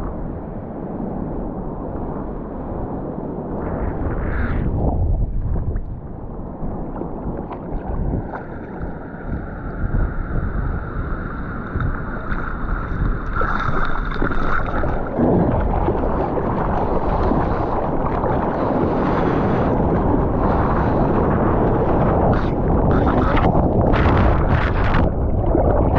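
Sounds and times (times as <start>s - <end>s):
wind buffeting microphone: 0.0s - 25.9s
rushing splashing seawater: 3.6s - 25.9s.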